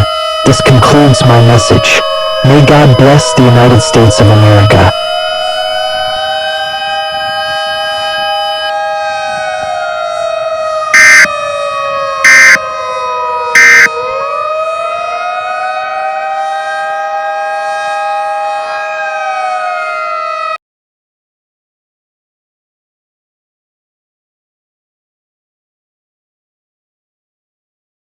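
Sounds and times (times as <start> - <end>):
loud data burst tones: 0.0 - 6.2, 11.0 - 11.3, 12.3 - 12.6, 13.6 - 13.9
civil defense siren wailing: 0.0 - 20.6.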